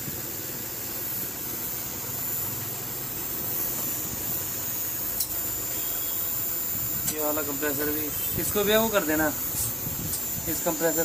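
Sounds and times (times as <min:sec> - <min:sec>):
air conditioner humming: 0:00.0 - 0:11.0
sharp click: 0:05.2 - 0:05.4, 0:07.0 - 0:07.3.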